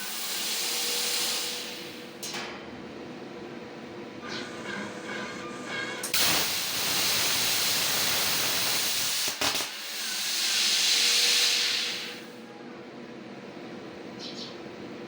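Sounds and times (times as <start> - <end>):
plasma cutter torch hissing: 0.0 - 2.1, 6.1 - 12.3.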